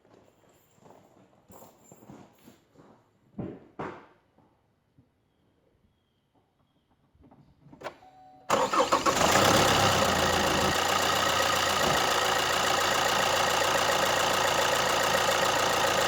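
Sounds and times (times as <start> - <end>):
diesel engine starting and idling: 8.5 - 16.0.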